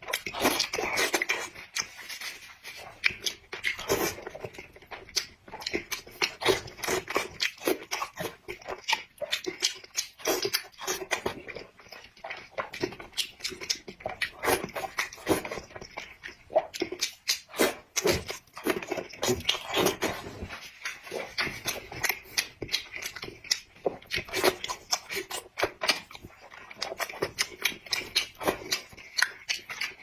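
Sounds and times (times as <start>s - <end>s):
close chewing with mouth smacks: 0.0s - 30.0s.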